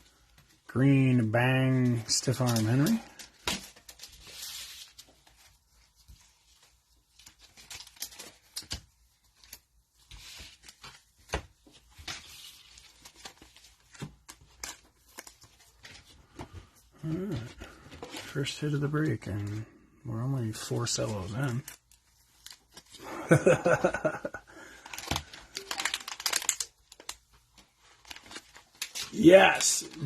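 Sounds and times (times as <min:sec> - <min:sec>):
cards clicking and rustling: 0:02.0 - 0:05.5, 0:07.2 - 0:18.3, 0:24.7 - 0:30.0
cellophane wrapper tearing: 0:24.9 - 0:27.2.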